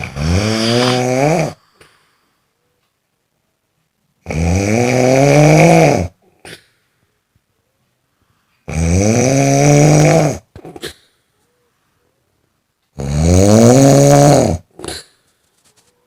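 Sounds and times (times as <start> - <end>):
person snoring: 0.0 - 2.0, 4.2 - 6.6, 8.7 - 10.5, 13.0 - 15.1.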